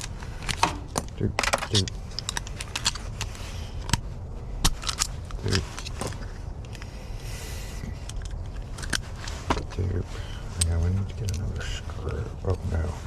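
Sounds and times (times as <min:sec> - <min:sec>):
metallic clicks of lock parts: 0:00.0 - 0:04.0, 0:04.6 - 0:06.9.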